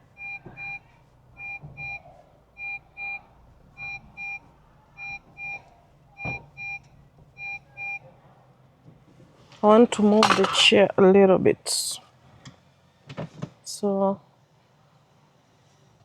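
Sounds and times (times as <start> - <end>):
car warning chime double beep: 0.1 - 4.4, 5.0 - 8.0.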